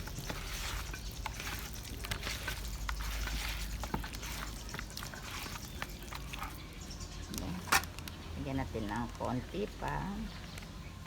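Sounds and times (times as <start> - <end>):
chicken mixed by hand rustling: 0.0 - 7.5.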